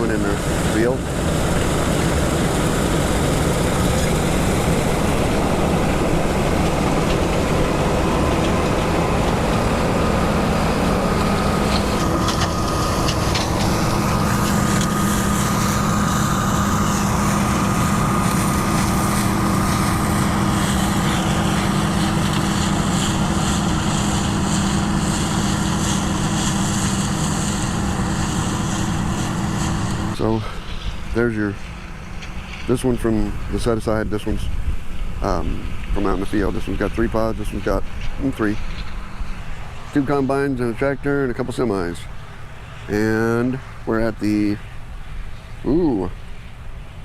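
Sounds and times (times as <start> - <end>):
combine harvester running: 0.0 - 47.0.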